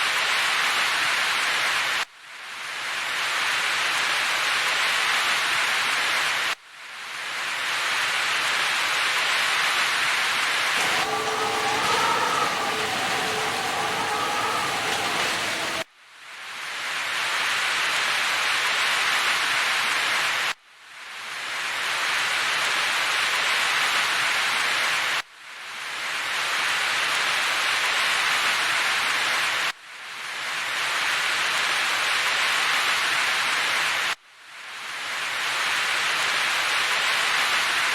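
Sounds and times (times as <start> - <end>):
heavy rain hissing: 7.1 - 15.9.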